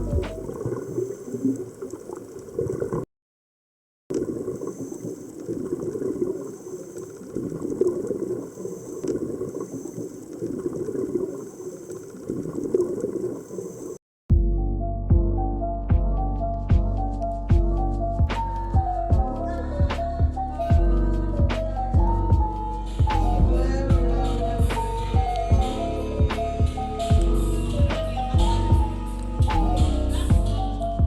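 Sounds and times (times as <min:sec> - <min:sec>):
water bubbling and gurgling: 0:00.0 - 0:03.1, 0:04.1 - 0:14.0.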